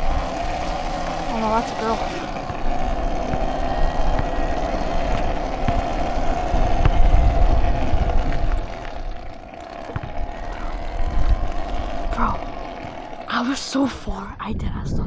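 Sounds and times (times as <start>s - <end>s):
wind buffeting microphone: 2.4s - 12.6s.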